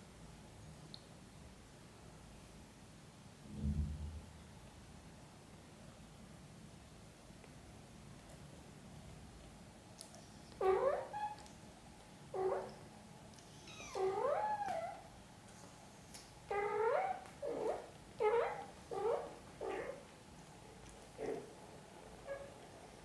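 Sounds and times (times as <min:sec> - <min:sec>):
cat meowing: 0:13.5 - 0:15.0.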